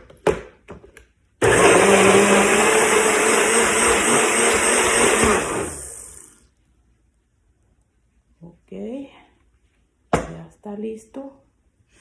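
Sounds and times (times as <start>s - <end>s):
electric blender running: 1.4s - 6.4s.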